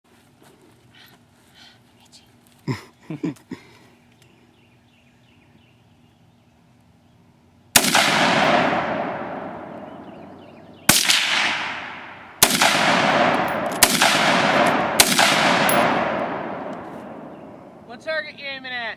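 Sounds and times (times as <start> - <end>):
rifle rapid fire with echo: 7.8 - 17.9.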